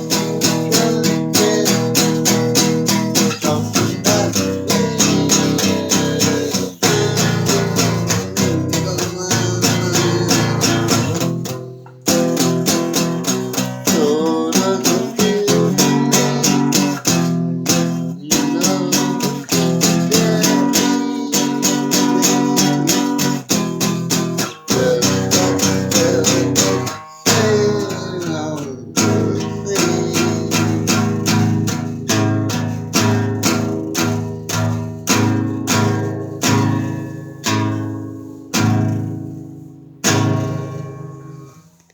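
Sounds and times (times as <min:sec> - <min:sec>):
acoustic guitar strumming: 0:00.0 - 0:41.9.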